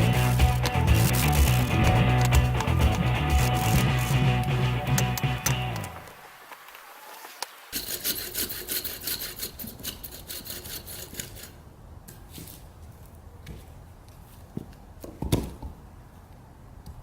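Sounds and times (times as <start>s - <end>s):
hand saw cutting log: 0.0s - 4.5s, 7.7s - 11.6s
music: 0.0s - 6.0s.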